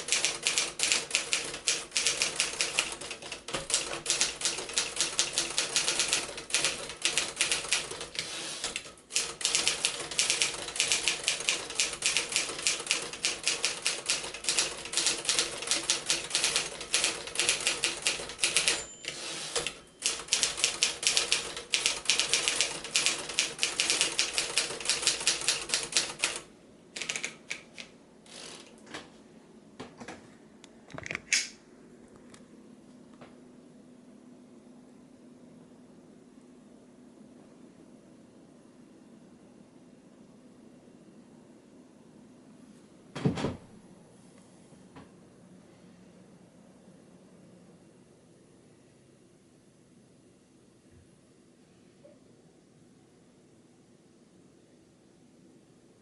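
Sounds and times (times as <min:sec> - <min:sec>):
manual typewriter typing: 0:00.0 - 0:28.8.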